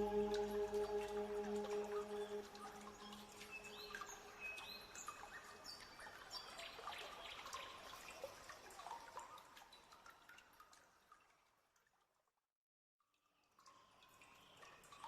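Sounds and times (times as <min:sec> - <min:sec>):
held music note: 0:00.0 - 0:03.6
river water trickling: 0:00.0 - 0:12.2, 0:13.1 - 0:15.0.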